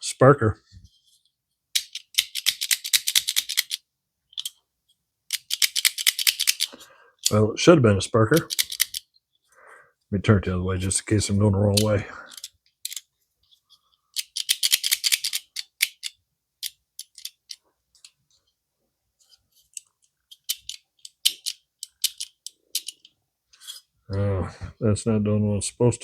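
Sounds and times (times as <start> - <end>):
flint sparker clicking and scraping: 19.7 - 23.9.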